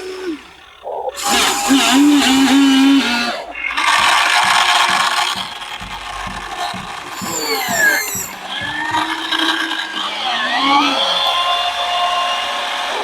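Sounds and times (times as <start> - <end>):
electric gear motors whirring: 0.0 - 13.0.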